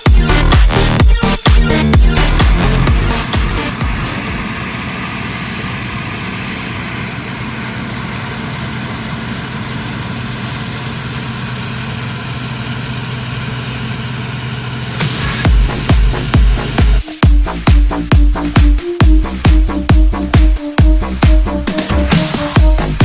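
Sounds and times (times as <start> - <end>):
diesel engine running: 0.0 - 17.0.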